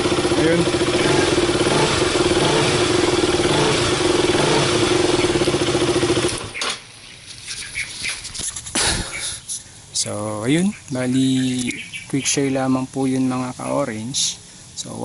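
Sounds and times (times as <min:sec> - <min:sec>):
motorcycle engine running: 0:00.0 - 0:06.6.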